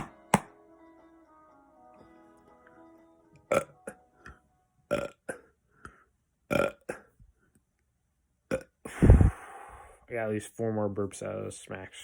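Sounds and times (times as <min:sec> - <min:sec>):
man burping: 0:03.5 - 0:04.0, 0:04.9 - 0:05.5, 0:06.5 - 0:07.2, 0:08.5 - 0:09.3.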